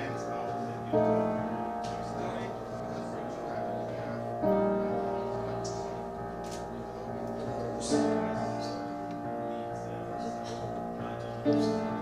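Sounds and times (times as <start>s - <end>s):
ringing chords: 0.0s - 12.0s.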